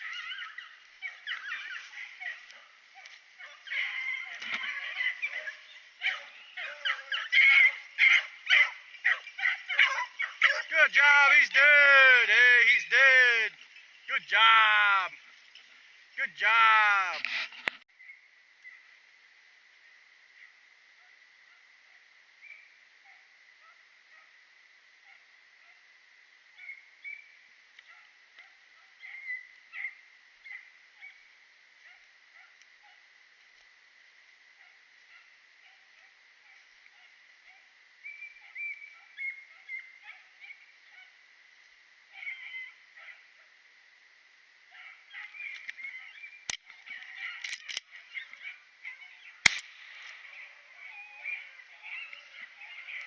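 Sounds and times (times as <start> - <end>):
dogs barking in the distance: 0.0 - 12.8, 34.6 - 41.2, 44.7 - 49.4, 50.0 - 53.0
beagles baying: 0.0 - 17.2, 44.8 - 53.0
small sharp reports: 10.4 - 15.3, 16.2 - 17.4.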